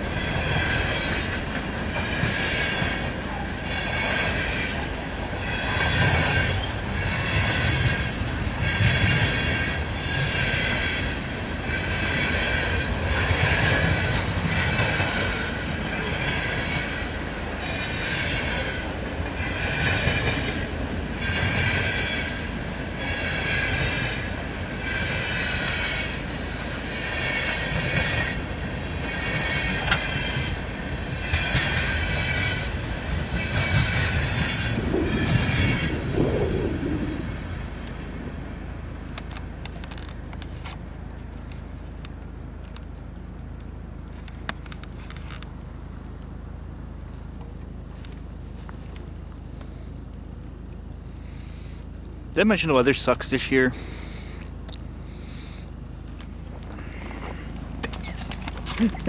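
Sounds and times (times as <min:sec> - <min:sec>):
metallic wheel squeal: 0:00.0 - 0:37.6
train cars rumbling: 0:00.0 - 0:59.0.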